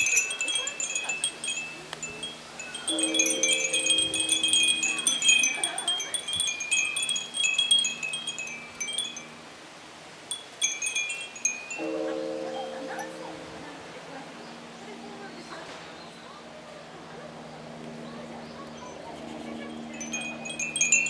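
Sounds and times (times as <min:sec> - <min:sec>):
wind bells jingling: 0:00.0 - 0:09.6, 0:10.2 - 0:14.2, 0:18.8 - 0:21.0
deep temple bell ringing: 0:02.8 - 0:05.7, 0:11.8 - 0:13.6.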